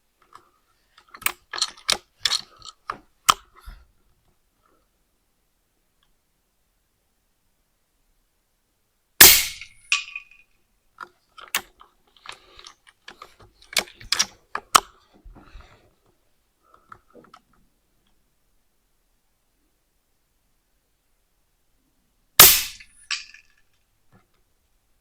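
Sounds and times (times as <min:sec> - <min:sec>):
rifle handling clicks and knocks: 0:00.2 - 0:03.8, 0:09.5 - 0:10.4, 0:11.0 - 0:18.2, 0:22.7 - 0:24.4
air rifle shot: 0:09.2 - 0:09.7, 0:22.4 - 0:22.8.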